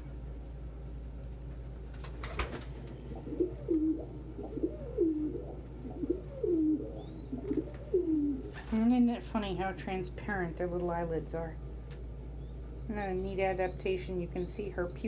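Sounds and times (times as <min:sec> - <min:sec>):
pigeons cooing: 0:02.2 - 0:09.7.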